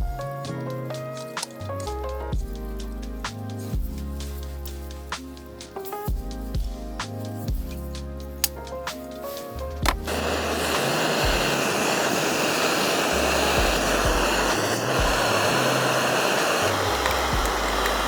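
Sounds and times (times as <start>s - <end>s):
electric air pump whirring: 9.3s - 18.0s.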